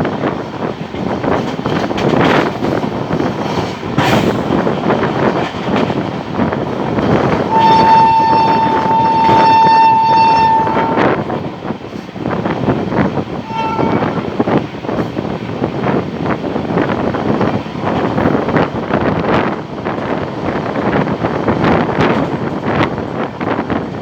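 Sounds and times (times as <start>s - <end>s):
train wheels rumbling on rail: 0.0s - 24.0s
wind: 0.0s - 24.0s
locomotive horn blast: 7.5s - 11.4s, 13.4s - 14.4s.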